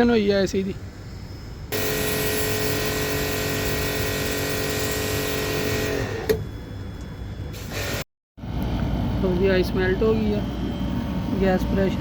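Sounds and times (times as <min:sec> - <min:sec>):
electric machine hissing and humming: 0:00.8 - 0:06.5.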